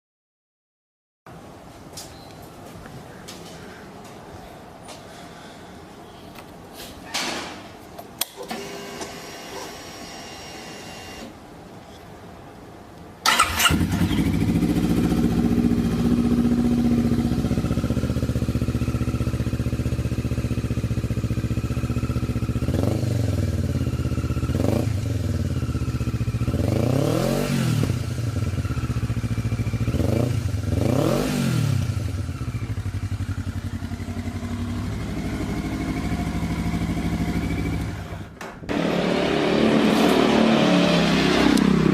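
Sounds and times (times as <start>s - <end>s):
motorcycle engine idling: 13.3s - 26.6s, 28.1s - 30.7s, 32.0s - 38.4s.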